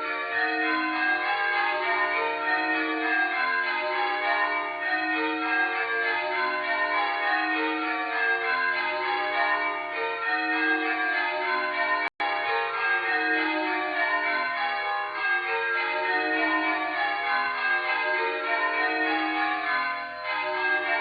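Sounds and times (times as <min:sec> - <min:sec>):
church bells ringing: 0:00.0 - 0:21.0.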